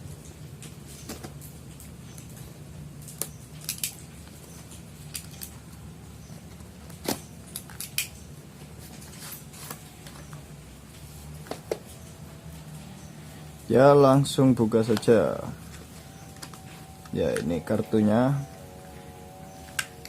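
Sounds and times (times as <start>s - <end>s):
low hum: 8.2s - 20.0s.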